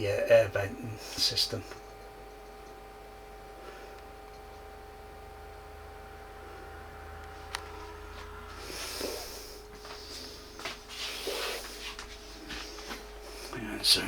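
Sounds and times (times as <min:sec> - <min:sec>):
projector fan humming and whining: 0:00.0 - 0:14.0
rustling handling noises: 0:08.2 - 0:13.6.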